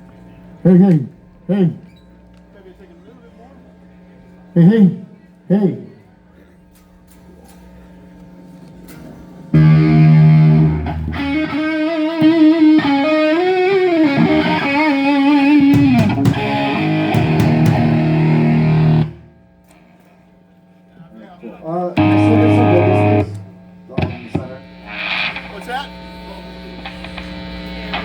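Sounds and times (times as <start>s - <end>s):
distorted electric guitar: 9.5s - 19.3s, 22.0s - 28.0s
amp hum: 9.5s - 20.0s, 21.8s - 28.0s.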